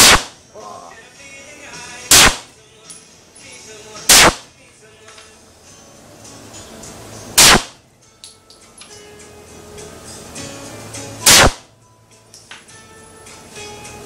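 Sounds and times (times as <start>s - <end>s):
pistol shots: 0.0s - 0.4s, 2.1s - 2.5s, 4.1s - 4.5s, 7.4s - 7.8s, 11.2s - 11.7s.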